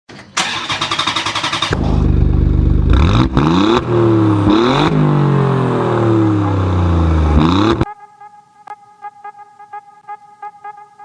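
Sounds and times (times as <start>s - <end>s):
motorcycle engine revving: 0.5s - 7.9s.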